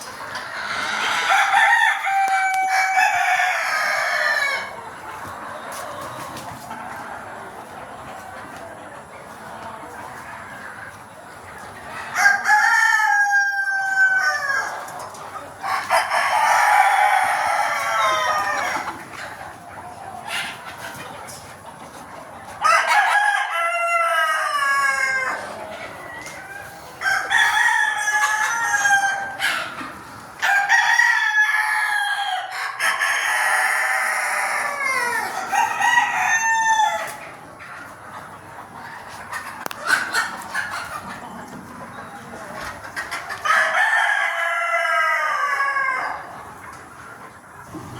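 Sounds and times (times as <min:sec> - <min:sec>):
roosters crowing: 0:00.0 - 0:04.8, 0:12.1 - 0:14.8, 0:15.6 - 0:19.0, 0:22.6 - 0:29.8, 0:30.4 - 0:37.4, 0:43.4 - 0:46.3.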